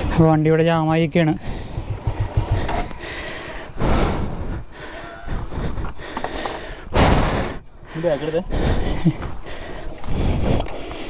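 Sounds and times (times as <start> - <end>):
motorcycle engine straining: 1.1 - 3.5.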